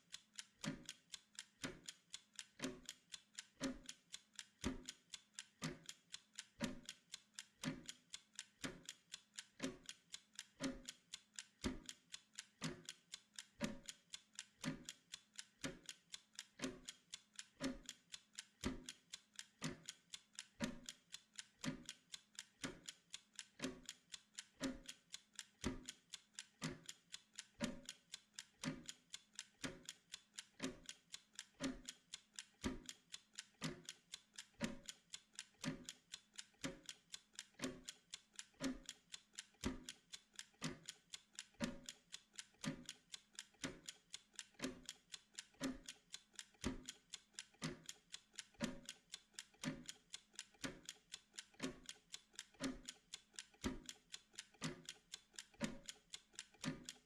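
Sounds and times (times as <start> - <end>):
timer ticking: 0.0 - 57.0.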